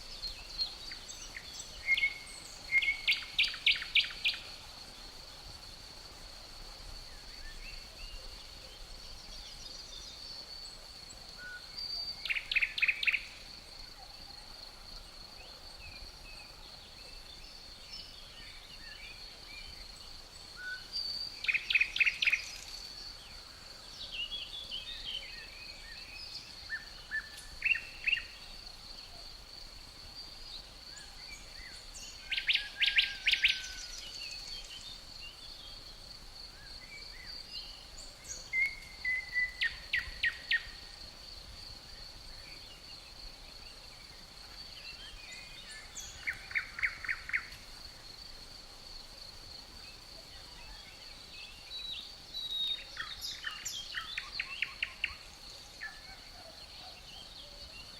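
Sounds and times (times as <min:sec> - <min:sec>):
high-pitched insect trill: 0:00.0 - 0:57.9.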